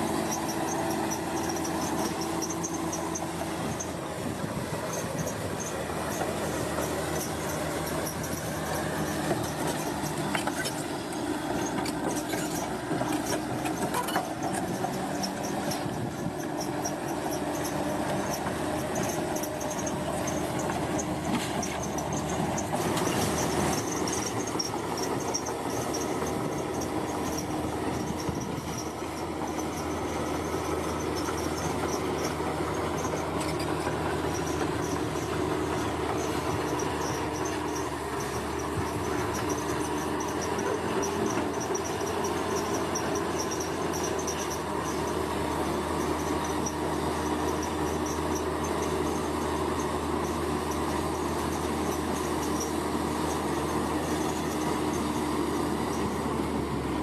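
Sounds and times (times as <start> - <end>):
bulldozer diesel engine running: 0.0 - 57.0
insects chirping: 23.4 - 49.4.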